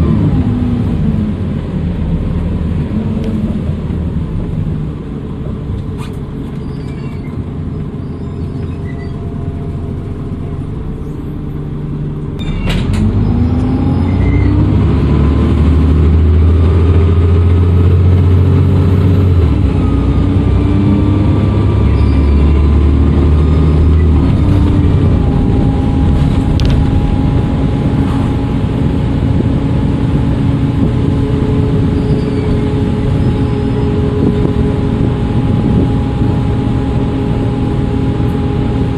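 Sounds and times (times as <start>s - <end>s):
bus engine running: 0.0s - 38.9s
turbo whistle: 21.9s - 22.7s, 31.9s - 34.0s.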